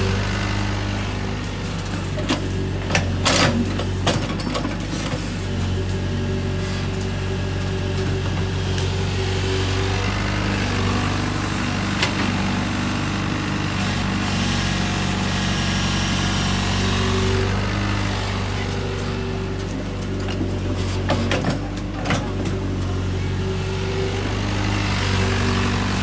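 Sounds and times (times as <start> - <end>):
excavator diesel engine running: 0.0 - 26.0.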